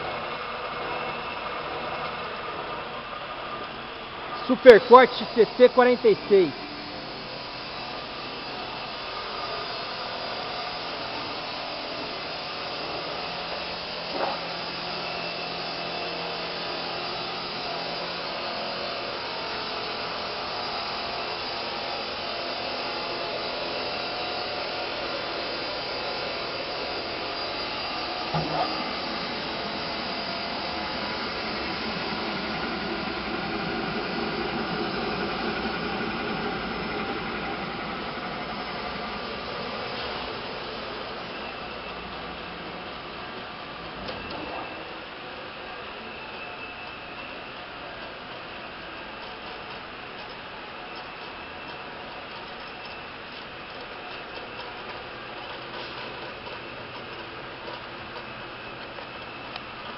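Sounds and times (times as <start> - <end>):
stone cutting saw whirring: 0.0 - 47.5.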